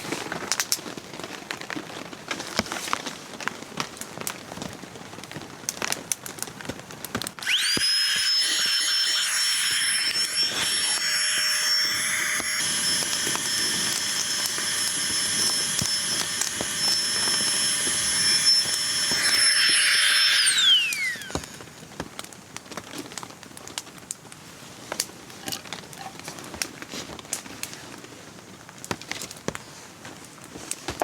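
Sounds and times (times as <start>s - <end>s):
small motor whining: 7.4s - 21.7s.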